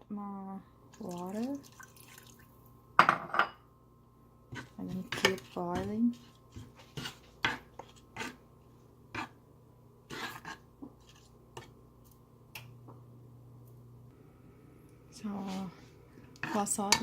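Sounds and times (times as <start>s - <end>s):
spoon scraping a pot: 4.5s - 8.4s, 9.1s - 9.4s, 10.1s - 11.7s, 16.4s - 17.0s
faint low hum: 7.8s - 17.0s.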